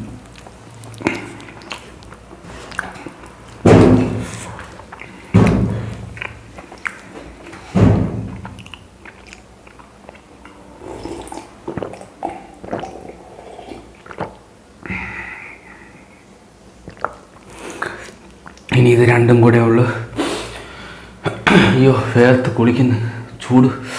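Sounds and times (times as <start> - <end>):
person chewing with wet smacks: 0.0 - 14.9, 16.1 - 18.9.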